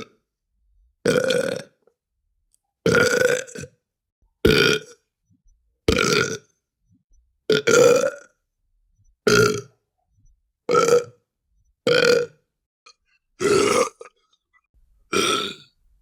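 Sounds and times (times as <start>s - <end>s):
person burping: 1.0s - 1.8s, 2.8s - 3.8s, 4.4s - 5.0s, 5.9s - 6.5s, 7.5s - 8.3s, 9.2s - 9.7s, 10.7s - 11.2s, 11.9s - 14.3s, 15.1s - 15.7s.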